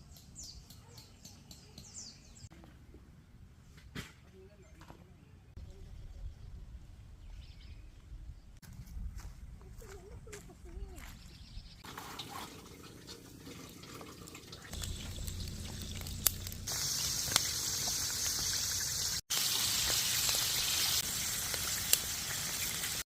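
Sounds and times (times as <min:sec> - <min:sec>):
running water trickling: 0:11.8 - 0:23.0.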